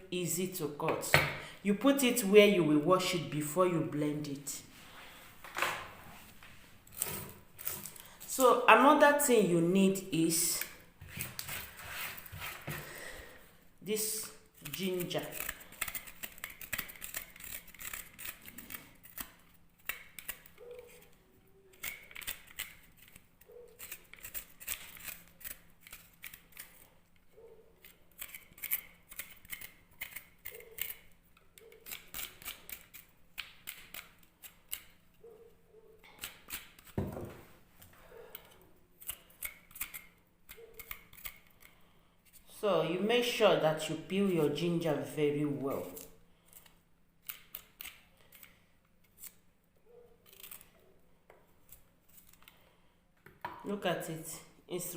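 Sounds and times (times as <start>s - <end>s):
knife scraping ginger skin: 6.9s - 8.4s, 10.3s - 35.2s, 36.1s - 37.0s, 37.8s - 42.5s, 43.8s - 49.4s, 50.2s - 50.9s, 51.6s - 52.7s.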